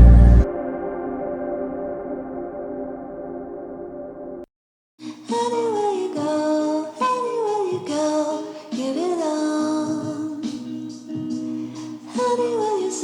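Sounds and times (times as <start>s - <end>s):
pop song with singing: 0.0s - 0.5s, 5.1s - 13.0s
muffled ambient music: 0.0s - 4.4s.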